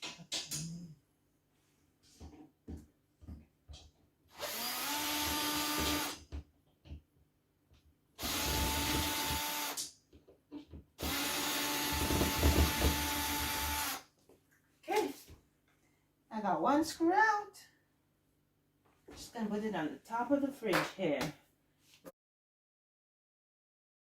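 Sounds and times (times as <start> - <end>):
power drill whining: 4.3 - 6.2, 8.2 - 9.8, 11.0 - 14.0.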